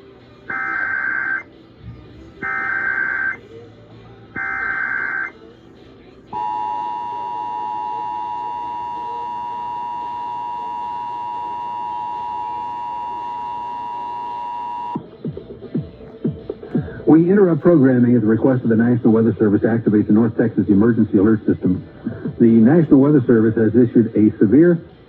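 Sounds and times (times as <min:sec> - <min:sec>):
two-tone attention signal: 0:00.5 - 0:01.4, 0:02.4 - 0:03.4, 0:04.4 - 0:05.3, 0:06.4 - 0:15.0.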